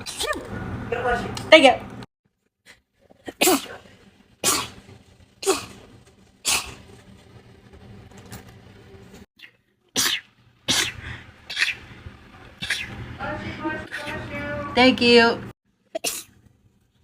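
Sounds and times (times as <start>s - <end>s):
person sneezing: 3.3s - 4.8s, 5.4s - 5.8s, 10.0s - 11.8s.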